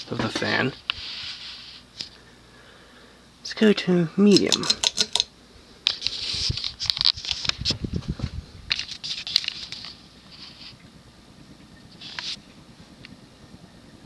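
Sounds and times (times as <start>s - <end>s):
metal pull chain rattling and clicking: 4.3s - 5.3s.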